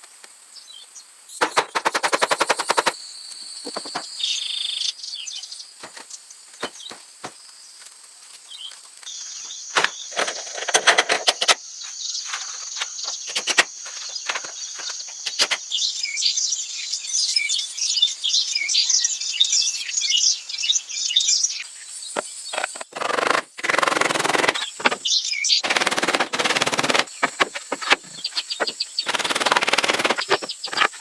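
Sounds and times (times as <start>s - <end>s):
sharp clicks or knocks: 1.4s - 3.0s, 9.8s - 11.6s, 12.8s - 15.6s
high insect buzz: 22.2s - 31.0s.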